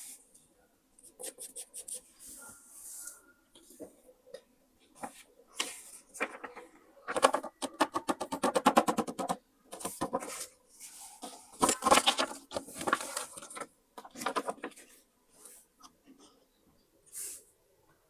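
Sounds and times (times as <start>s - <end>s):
paper rustling and scraping: 9.7s - 15.7s.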